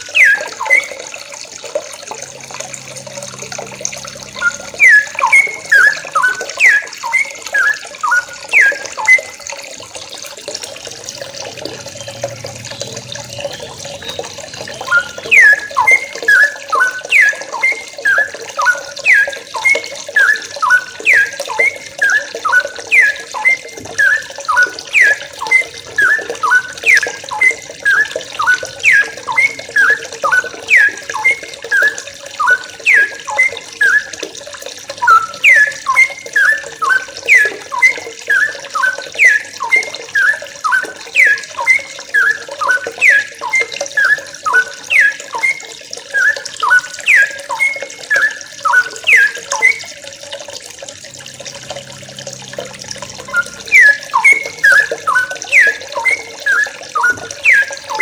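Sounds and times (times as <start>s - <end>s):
young birds calling: 2.3s - 9.1s, 51.1s - 58.0s.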